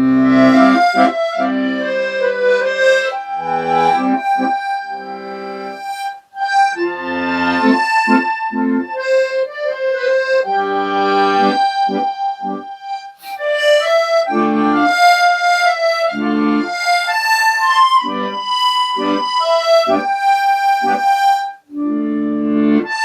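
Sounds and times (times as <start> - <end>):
accordion playing melody: 0.0 - 23.0.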